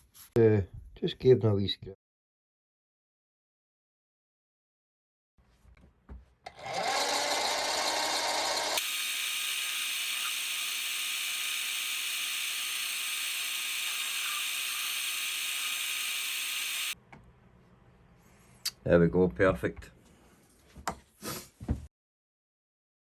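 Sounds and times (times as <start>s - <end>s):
small power tool running: 6.5s - 17.0s.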